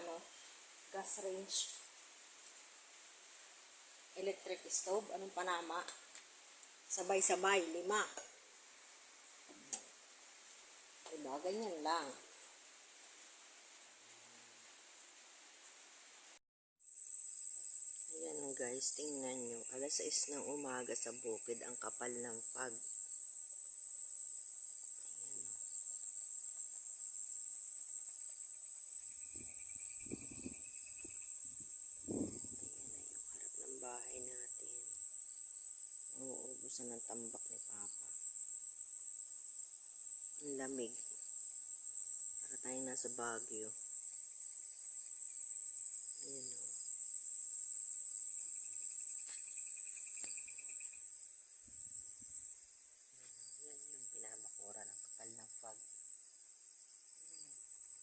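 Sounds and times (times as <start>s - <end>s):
high-pitched insect trill: 16.8s - 58.0s.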